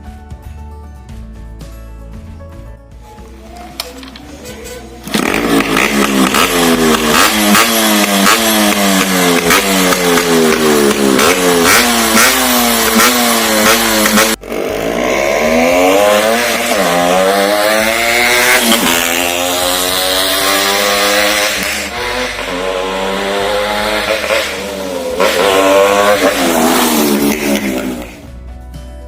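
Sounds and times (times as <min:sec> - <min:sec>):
two-stroke motorcycle engine revving: 0:05.0 - 0:28.2.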